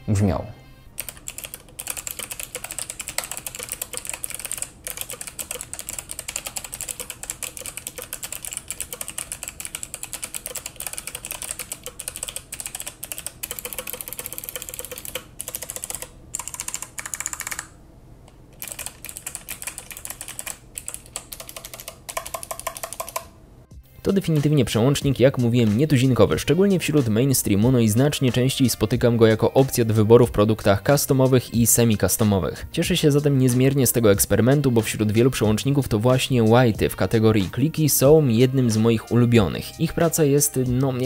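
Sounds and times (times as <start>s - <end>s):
mechanical keyboard typing clicks: 1.0s - 17.7s, 18.6s - 23.3s.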